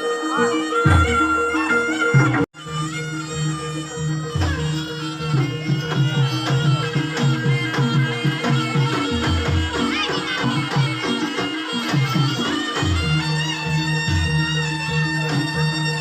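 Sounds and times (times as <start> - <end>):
ringing held notes: 0.0 - 12.7
shrill reed wind melody: 0.0 - 16.0.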